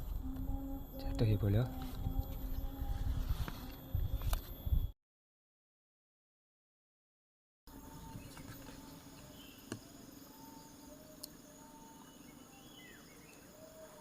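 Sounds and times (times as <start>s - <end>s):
insects humming: 0.0s - 4.9s, 7.7s - 14.0s
birds whistling: 7.8s - 14.0s.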